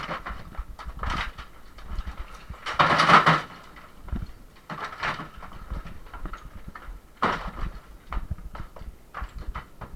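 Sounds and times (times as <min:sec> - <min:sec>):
demolition knocking and clattering: 0:00.0 - 0:09.9.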